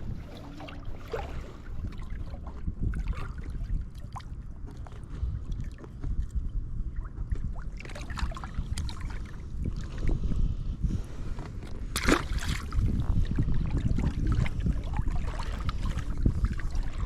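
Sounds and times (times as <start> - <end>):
small water splashes: 0.0 - 6.3, 6.9 - 10.2, 11.9 - 17.0
wind rumble on microphone: 0.0 - 17.0.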